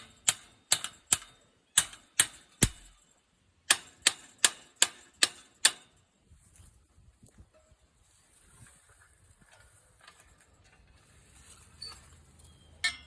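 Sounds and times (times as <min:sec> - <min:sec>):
hammer striking metal: 0:01.8 - 0:03.0.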